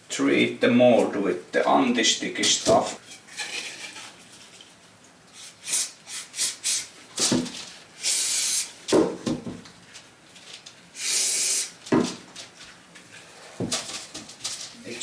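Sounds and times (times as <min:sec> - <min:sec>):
aerosol spray hissing: 0:05.4 - 0:06.9, 0:08.0 - 0:08.7, 0:11.0 - 0:11.8
knocks and rustles of handling: 0:07.1 - 0:07.9, 0:08.8 - 0:10.9, 0:11.8 - 0:15.0.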